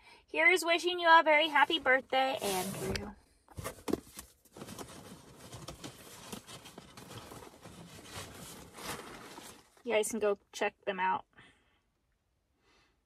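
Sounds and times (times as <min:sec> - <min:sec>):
paper and cardboard rustling: 0:01.5 - 0:09.8.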